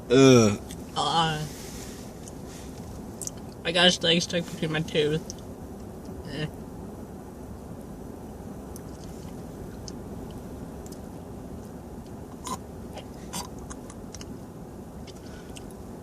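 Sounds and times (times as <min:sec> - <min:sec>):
low background rumble: 0:00.0 - 0:16.0
person chewing crunchy food: 0:12.0 - 0:14.4, 0:15.0 - 0:15.8.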